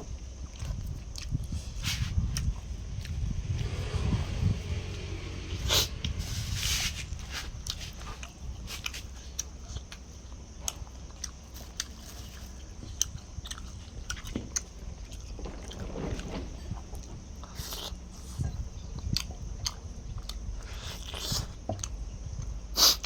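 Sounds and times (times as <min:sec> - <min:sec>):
low steady hum: 0:00.0 - 0:22.8
chewing and mouth clicks: 0:00.4 - 0:01.6, 0:07.6 - 0:15.3, 0:17.5 - 0:23.0.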